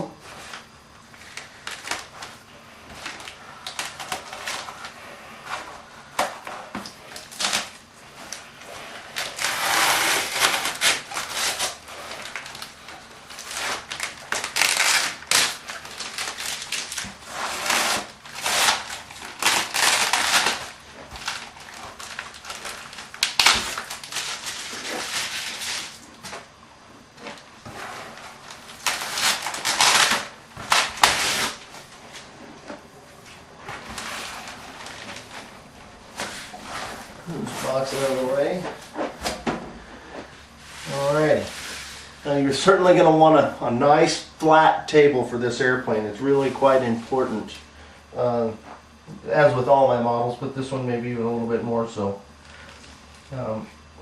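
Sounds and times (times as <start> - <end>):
tape being peeled off: 3.0 - 26.4, 27.2 - 32.3.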